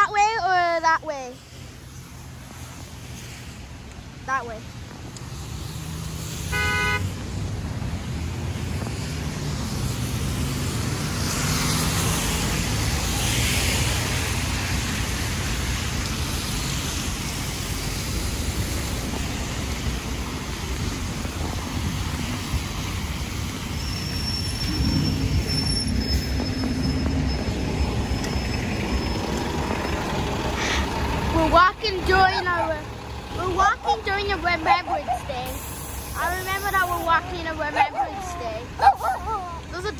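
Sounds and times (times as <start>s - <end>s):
traffic on wet road: 0.0s - 39.9s
short beep: 23.8s - 29.2s.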